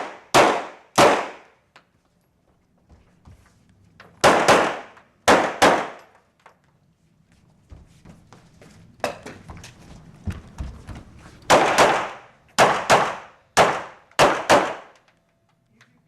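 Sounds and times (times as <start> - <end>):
handgun shots with echo: 0.0 - 1.5, 4.2 - 6.1, 11.5 - 15.0.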